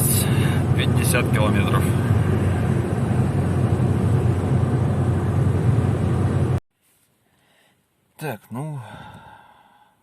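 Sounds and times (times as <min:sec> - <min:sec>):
car driving at highway speed: 0:00.0 - 0:06.6.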